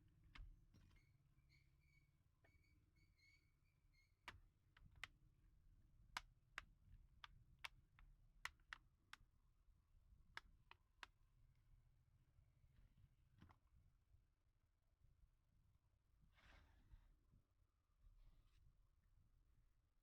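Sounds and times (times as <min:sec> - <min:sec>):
clicks and taps of laptop parts: 0:06.1 - 0:09.3.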